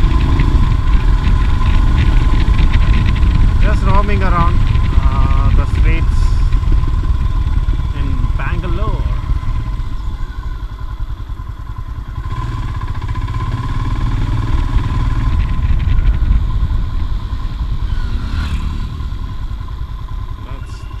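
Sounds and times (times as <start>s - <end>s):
motorcycle engine while riding: 0.0s - 21.0s.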